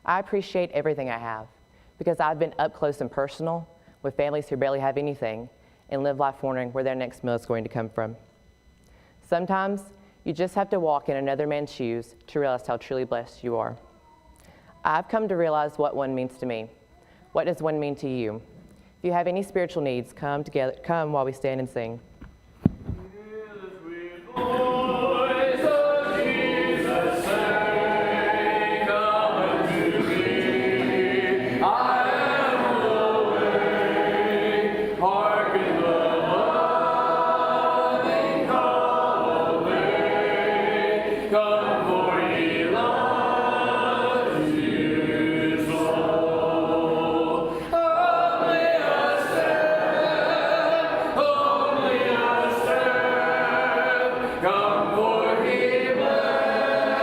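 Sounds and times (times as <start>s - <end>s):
congregation singing a hymn: 23.0s - 57.0s.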